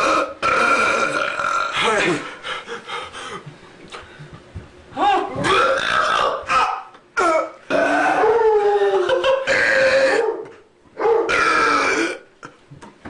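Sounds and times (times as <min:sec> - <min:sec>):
men belching: 0:00.0 - 0:02.2, 0:05.4 - 0:08.2, 0:08.9 - 0:10.2, 0:11.3 - 0:12.5.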